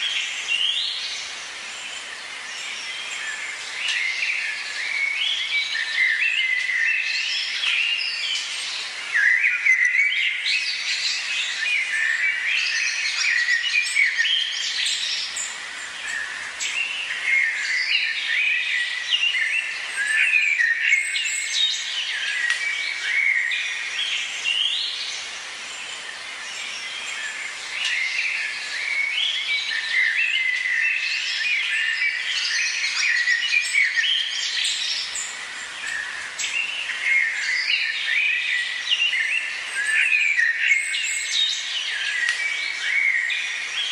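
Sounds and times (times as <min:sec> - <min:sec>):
birds chirping and calling: 0:00.0 - 0:43.9.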